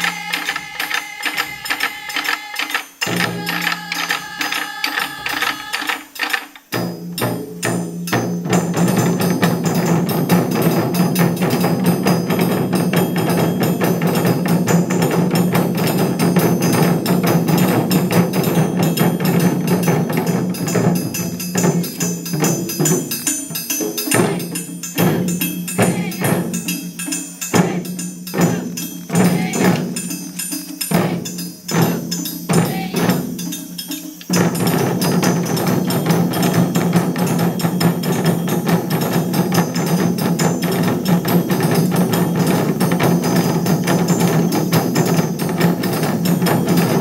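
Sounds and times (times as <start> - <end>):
taiko drum ensemble playing: 0.0 - 47.0.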